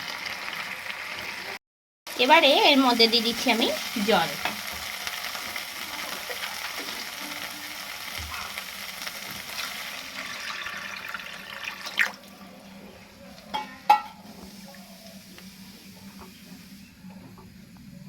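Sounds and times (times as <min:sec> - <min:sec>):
paste sizzling in hot oil: 0:00.0 - 0:12.1.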